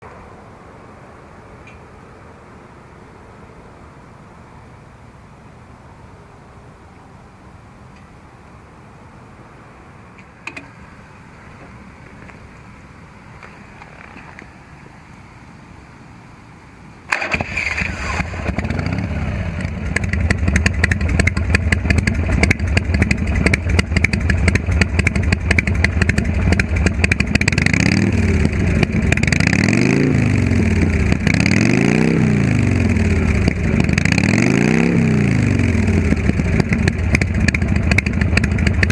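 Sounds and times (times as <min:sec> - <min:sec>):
motorcycle engine revving: 0:17.1 - 0:38.9
motorcycle engine starting: 0:17.1 - 0:38.9
motorcycle engine idling: 0:18.0 - 0:29.7, 0:35.5 - 0:38.9.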